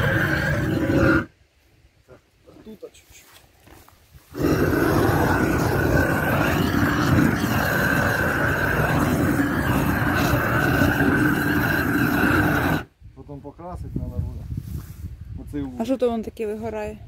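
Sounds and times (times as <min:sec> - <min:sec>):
blowtorch flame rushing: 0:00.0 - 0:01.3, 0:04.3 - 0:12.9.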